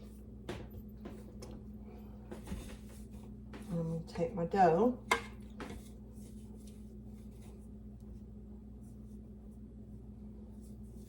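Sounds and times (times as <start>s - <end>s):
steady low hum: 0.0s - 11.0s
dough scraping and rubbing: 5.6s - 11.0s.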